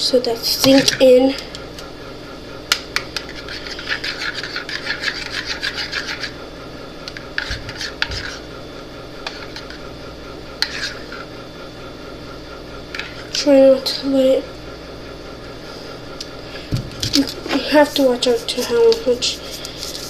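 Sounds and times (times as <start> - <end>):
utensil scraping slime in bowl: 0.4 - 1.2, 3.0 - 6.4, 7.1 - 8.5, 9.2 - 9.8, 10.6 - 11.3, 17.1 - 20.0.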